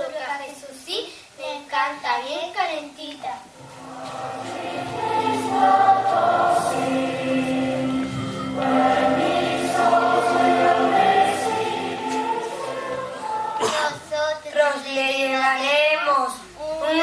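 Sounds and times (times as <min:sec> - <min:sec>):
music accompaniment: 0:03.6 - 0:14.0
children singing a carol: 0:03.6 - 0:14.3.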